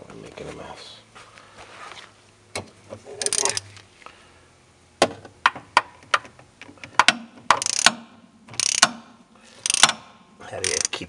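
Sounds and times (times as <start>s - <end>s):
hand ratchet clicking: 3.2s - 3.6s, 7.0s - 11.0s.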